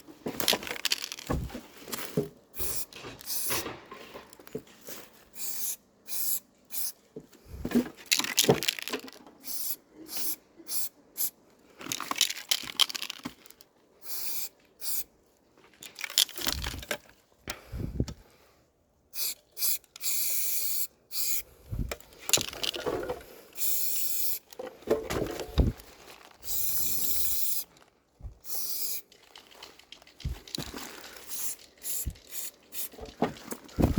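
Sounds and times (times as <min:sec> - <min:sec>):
spray paint can hissing: 0:02.6 - 0:03.6, 0:05.4 - 0:07.0, 0:09.4 - 0:11.3, 0:14.0 - 0:15.1, 0:19.1 - 0:21.4, 0:23.6 - 0:24.5, 0:26.4 - 0:27.7, 0:28.4 - 0:29.0, 0:31.2 - 0:33.0
scraping and handling knocks: 0:24.5 - 0:25.8, 0:32.9 - 0:33.9.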